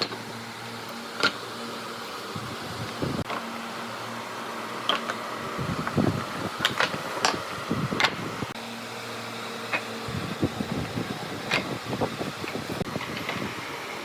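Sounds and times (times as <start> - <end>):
fan-like mechanical hum: 0.0 - 14.0
sharp clicks and knocks: 6.6 - 7.4.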